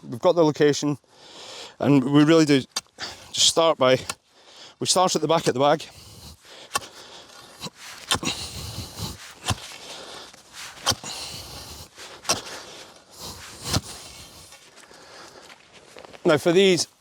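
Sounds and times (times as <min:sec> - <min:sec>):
rustling handling noise: 0:05.5 - 0:16.7.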